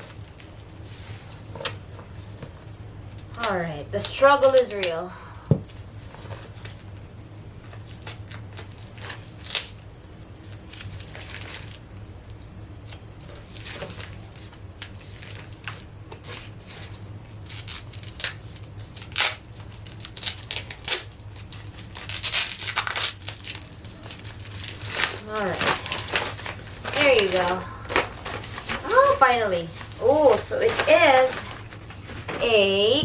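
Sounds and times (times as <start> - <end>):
plastic tearing and crinkling: 0.0 - 5.0, 5.6 - 33.0
steady low hum: 0.0 - 33.0
scissors cutting plastic: 17.4 - 32.7.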